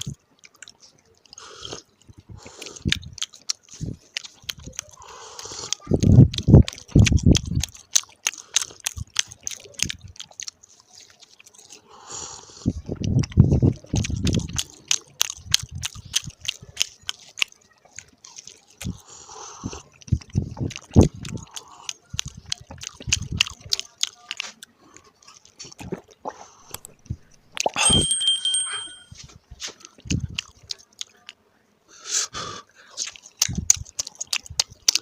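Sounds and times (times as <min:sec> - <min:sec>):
crunchy chewing: 0:00.0 - 0:27.8, 0:29.2 - 0:31.5, 0:32.7 - 0:35.0
wet mouth sounds: 0:00.0 - 0:28.0, 0:29.9 - 0:31.4, 0:33.0 - 0:35.0
ringing clink: 0:27.8 - 0:29.2.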